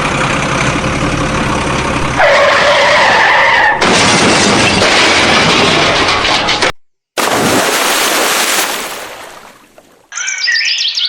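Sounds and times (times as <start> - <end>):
tyre screech: 2.0 - 3.8.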